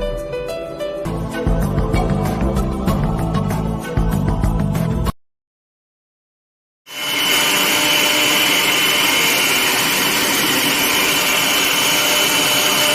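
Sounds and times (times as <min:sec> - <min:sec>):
electric blower whirring: 0:06.9 - 0:12.9.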